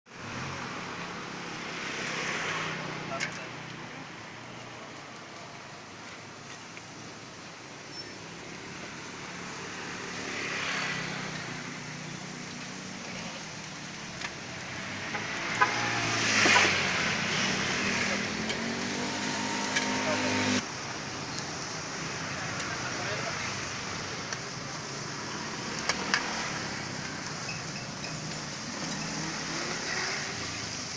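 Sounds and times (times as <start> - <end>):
street traffic hum: 0.1 - 30.9
vehicle passing: 14.4 - 20.6.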